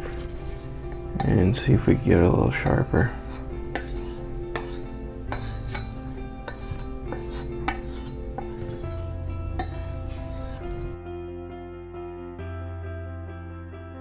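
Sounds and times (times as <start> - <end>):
knife stroking on strop: 0.0 - 11.0
soft background music: 0.0 - 14.0.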